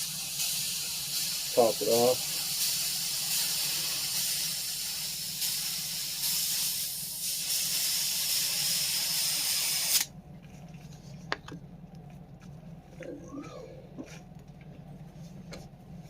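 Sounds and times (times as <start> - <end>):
gas hissing from a can: 0.0 - 10.1.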